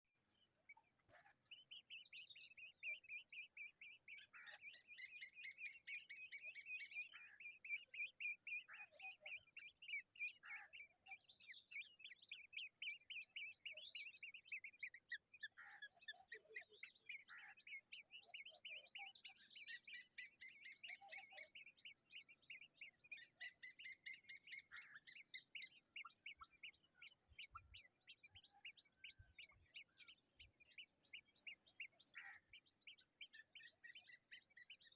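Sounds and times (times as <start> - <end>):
nestling birds cheeping: 0.2 - 34.9.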